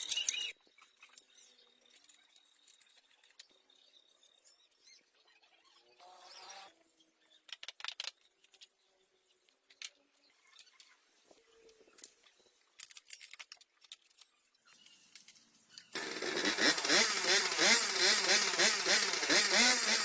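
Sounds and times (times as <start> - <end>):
moped two-stroke engine revving: 15.9 - 20.0.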